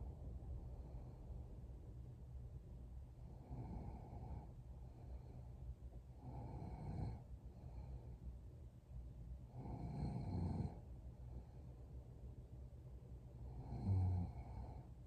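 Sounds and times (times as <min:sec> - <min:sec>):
woman snoring: 0:06.2 - 0:07.2, 0:09.6 - 0:10.8, 0:13.6 - 0:14.8.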